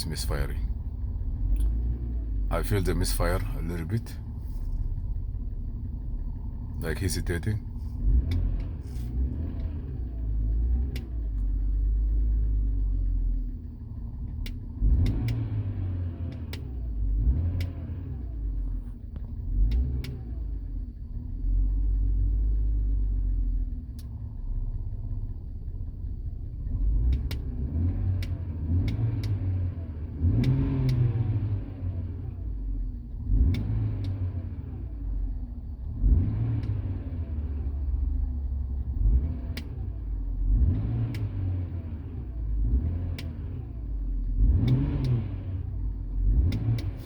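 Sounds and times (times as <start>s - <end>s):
car engine idling rough: 0.0s - 30.2s, 31.9s - 44.6s, 45.3s - 47.0s.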